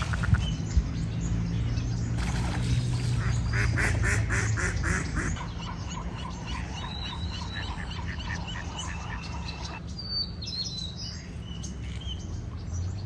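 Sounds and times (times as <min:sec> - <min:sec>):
bird chirping: 0:00.0 - 0:13.0
ducks quacking: 0:02.2 - 0:09.8.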